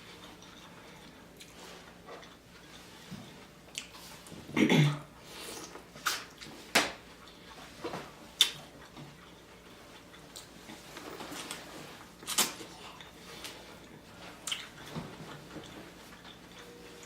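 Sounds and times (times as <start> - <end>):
wet eating smacks and chews: 8.4 - 10.8, 12.2 - 14.9.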